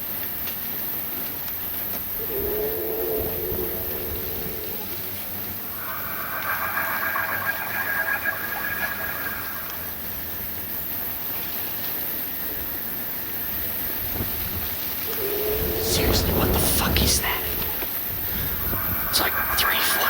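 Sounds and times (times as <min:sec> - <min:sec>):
raspy snore-like sound from sky: 0:02.2 - 0:10.0, 0:15.1 - 0:20.0.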